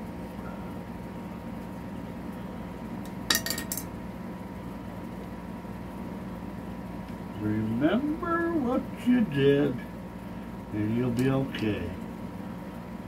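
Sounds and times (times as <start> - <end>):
steady low hum: 0.0 - 13.0
metal parts clinking: 3.3 - 3.9.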